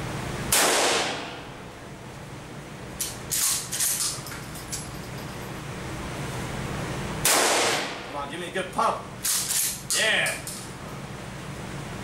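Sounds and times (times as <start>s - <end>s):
shotgun blast: 0.5s - 1.4s, 7.2s - 8.0s.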